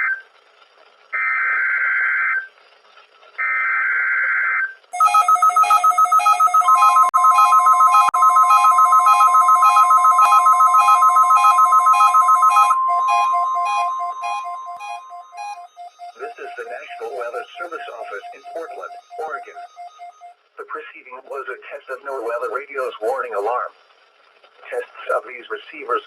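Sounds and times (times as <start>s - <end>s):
buzzy digital header tones: 5.0s - 20.3s
rapid electronic alarm beeps: 5.0s - 20.4s
steady warning alarm tone: 5.0s - 20.4s.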